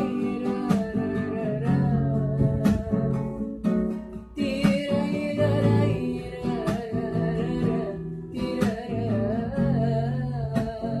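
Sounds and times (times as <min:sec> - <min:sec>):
acoustic guitar plucked: 0:00.0 - 0:11.0
person singing wordless melody: 0:00.0 - 0:11.0.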